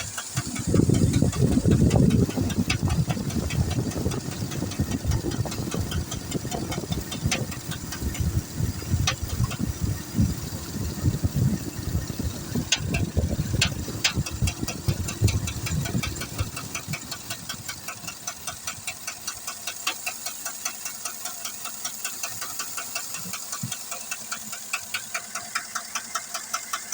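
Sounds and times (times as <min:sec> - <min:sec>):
engine running with ticking: 0:00.0 - 0:26.9
heavy low rumble: 0:00.2 - 0:17.8.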